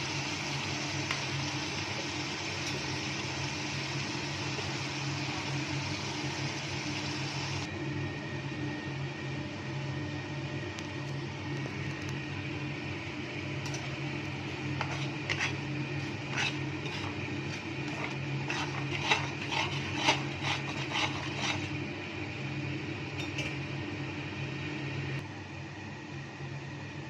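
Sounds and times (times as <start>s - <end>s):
metal utensil scraping pan: 13.6s - 21.8s.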